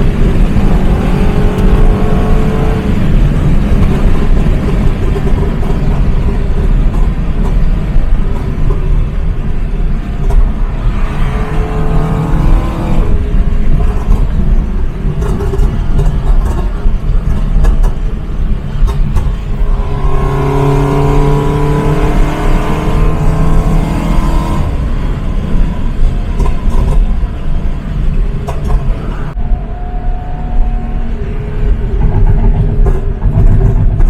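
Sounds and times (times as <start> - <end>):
exhaust pops and crackles: 0.0 - 10.9, 12.3 - 20.0, 24.5 - 29.3, 31.8 - 34.0
car engine rumbling: 0.0 - 34.0.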